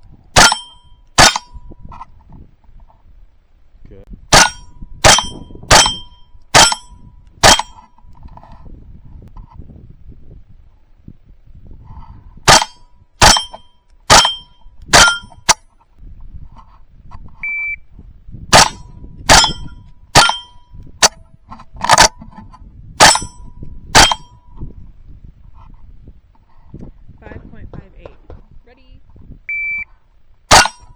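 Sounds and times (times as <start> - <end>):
rifle gunshots: 0.4 - 1.5, 4.3 - 6.0, 6.6 - 7.7, 12.5 - 15.2, 18.5 - 19.6, 24.0 - 24.2, 30.5 - 30.9
metallic ring of steel plates: 0.4 - 1.7, 4.3 - 7.9, 12.5 - 15.6, 18.5 - 21.2, 23.0 - 24.5, 30.5 - 30.9
shot timer beep: 17.4 - 17.8, 29.5 - 29.9.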